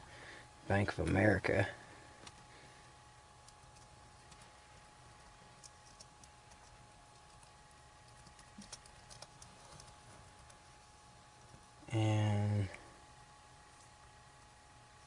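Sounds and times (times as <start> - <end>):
faint steady hum: 0.0 - 15.0
laptop keyboard typing: 3.4 - 4.5, 5.6 - 10.6.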